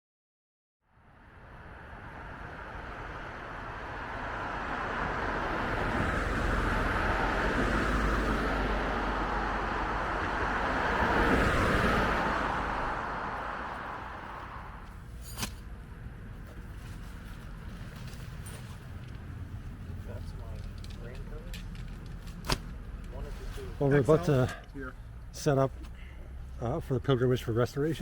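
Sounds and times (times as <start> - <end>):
vehicle passing: 1.0 - 14.9.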